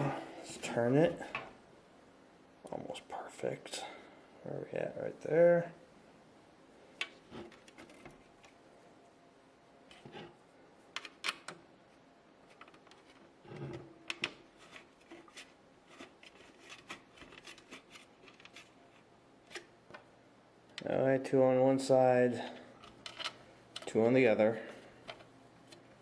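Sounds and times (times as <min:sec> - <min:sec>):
clicks and scrapes of hardware: 0:22.8 - 0:23.9.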